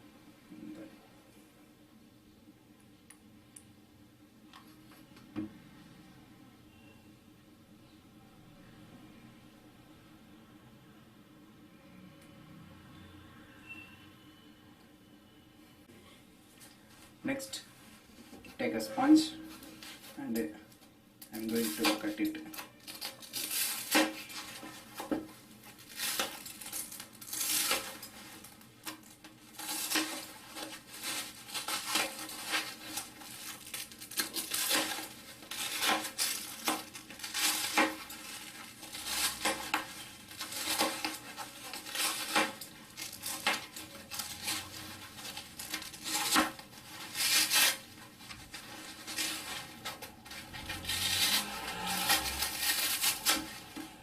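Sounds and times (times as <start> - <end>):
foam sponge being cut: 50.4 - 54.0.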